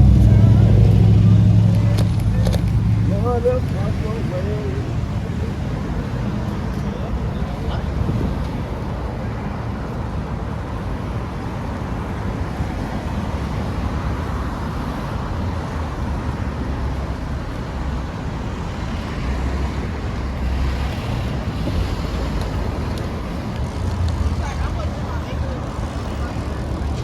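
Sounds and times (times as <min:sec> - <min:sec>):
vehicle passing: 0:00.0 - 0:06.6
city street traffic: 0:00.0 - 0:27.0
wind rumbling on microphone: 0:07.6 - 0:27.0.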